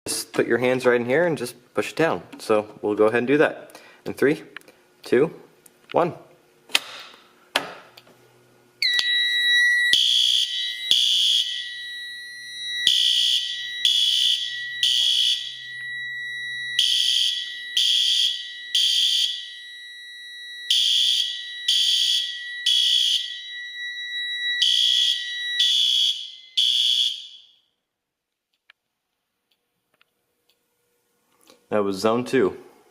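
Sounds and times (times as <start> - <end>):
fire alarm blasts: 8.8 - 27.8
steady high alarm tone: 8.8 - 27.8.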